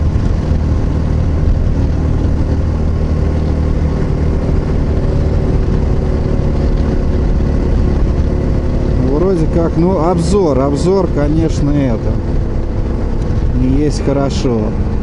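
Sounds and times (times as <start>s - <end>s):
motorcycle engine cruising: 0.0s - 15.0s
wind rushing over microphone: 0.0s - 15.0s.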